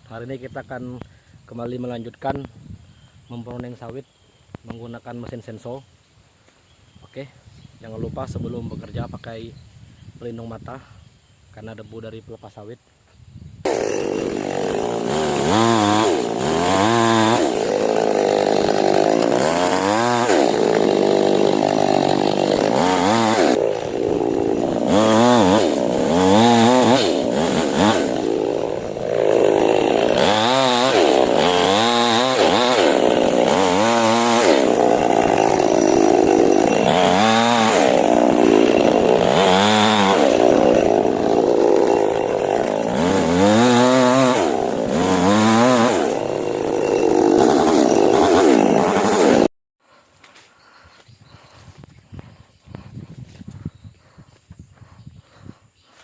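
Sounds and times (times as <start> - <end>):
chainsaw revving: 13.7 - 49.5.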